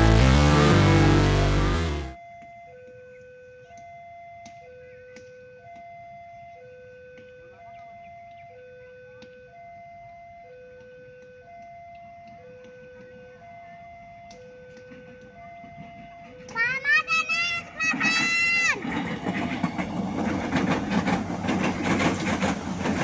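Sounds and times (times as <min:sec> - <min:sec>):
level crossing two-tone alarm: 0:00.0 - 0:02.2.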